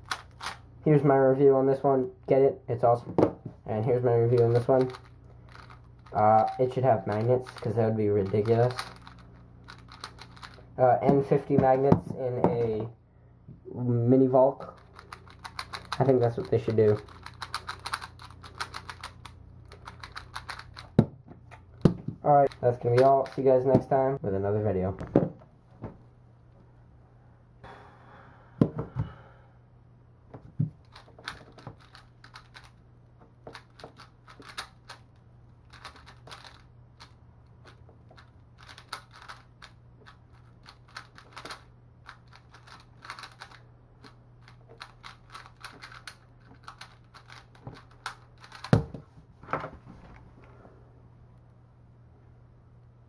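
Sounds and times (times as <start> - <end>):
puzzle cube plastic clicks: 0.0 - 0.6, 4.3 - 10.7, 14.8 - 21.0, 30.8 - 32.8, 33.4 - 48.9.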